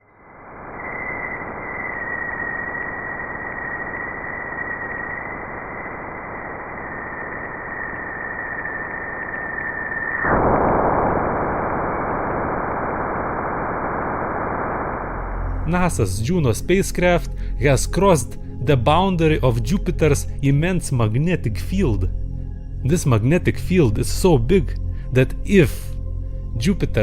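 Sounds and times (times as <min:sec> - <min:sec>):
steady radio-like hiss: 0:00.0 - 0:16.0
thin high whistle: 0:00.5 - 0:10.4.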